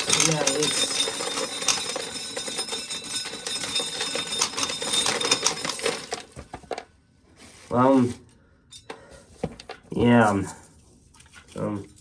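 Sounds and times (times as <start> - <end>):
corn sheller rattling clatter: 0.0 - 6.8.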